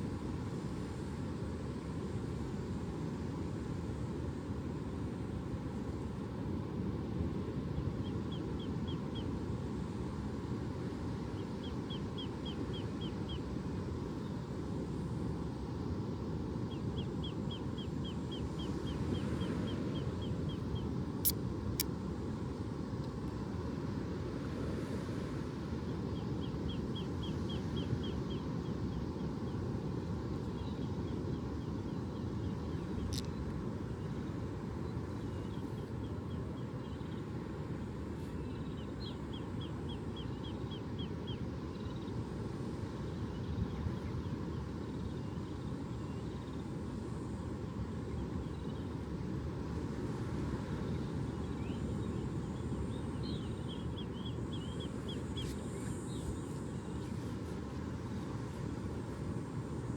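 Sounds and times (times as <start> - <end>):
low rushing background noise: 51.0 - 59.9.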